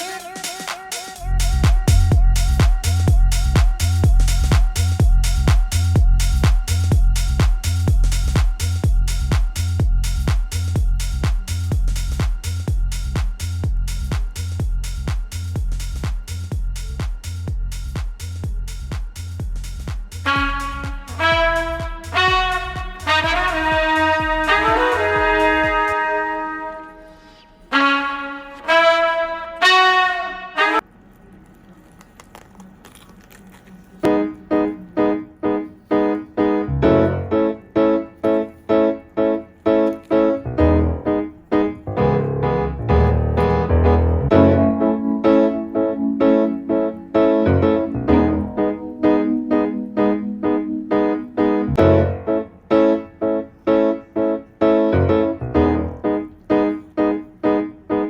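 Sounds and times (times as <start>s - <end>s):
keyboard chords over bass: 1.2s - 16.0s, 20.2s - 26.8s, 34.1s - 38.1s, 40.1s - 53.1s, 54.6s - 58.0s
brass phrase: 20.2s - 30.8s, 39.7s - 54.0s.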